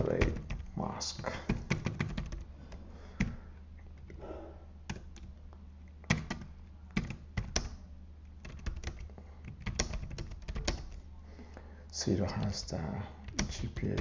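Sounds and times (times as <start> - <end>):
keyboard typing: 0.0 - 2.5, 3.1 - 4.2, 4.9 - 5.4, 6.0 - 11.0, 13.2 - 14.0
steady low hum: 0.0 - 14.0.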